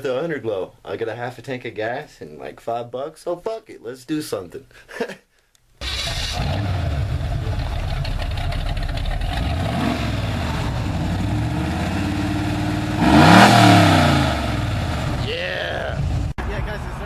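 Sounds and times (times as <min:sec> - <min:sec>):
car engine revving: 0:05.8 - 0:15.4.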